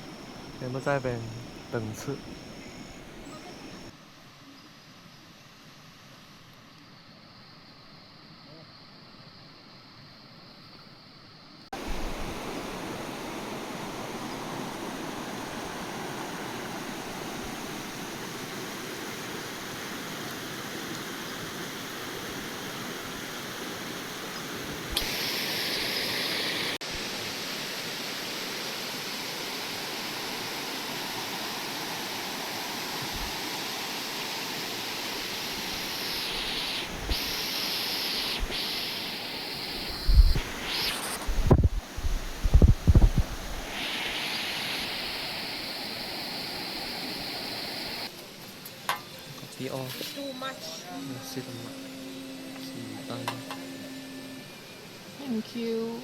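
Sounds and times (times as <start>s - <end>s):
running water rushing: 0.0s - 3.9s, 11.8s - 51.6s
bright high hiss: 0.0s - 4.0s, 11.7s - 56.0s.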